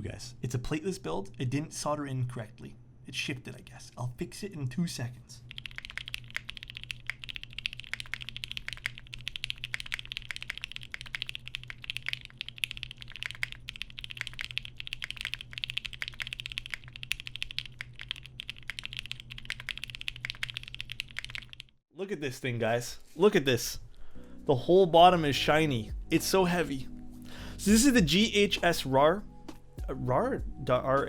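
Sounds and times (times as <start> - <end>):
mechanical keyboard keystroke clacks: 5.5 - 21.6.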